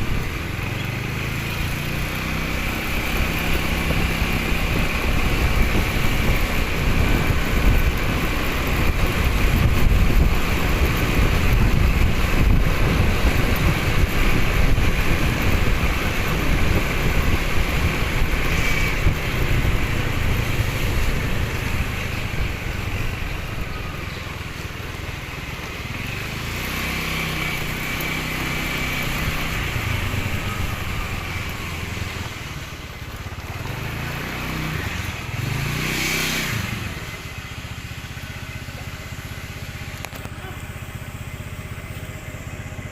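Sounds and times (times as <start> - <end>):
motorbike engine: 0.0 - 42.9
road and wind noise: 0.0 - 42.9.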